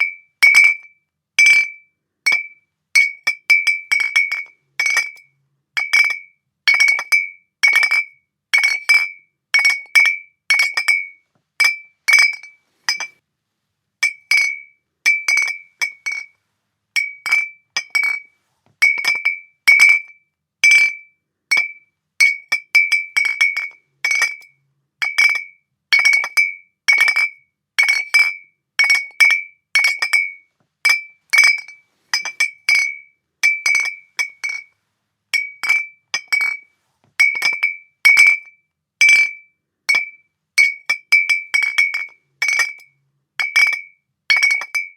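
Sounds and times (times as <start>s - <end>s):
glass bottles clinking: 2.3s - 5.2s, 8.7s - 13.2s, 14.0s - 16.3s, 17.0s - 20.0s, 20.7s - 24.4s, 25.0s - 34.7s, 35.4s - 38.4s, 39.0s - 44.9s.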